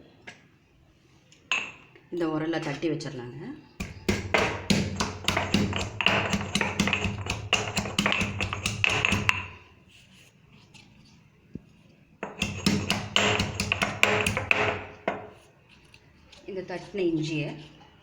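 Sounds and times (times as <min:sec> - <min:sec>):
pestle pounding in a mortar: 0:03.8 - 0:09.6, 0:12.2 - 0:15.3.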